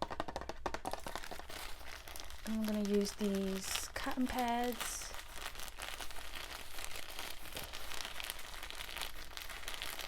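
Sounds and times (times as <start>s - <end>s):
cotton pads crinkling: 0.0s - 10.0s.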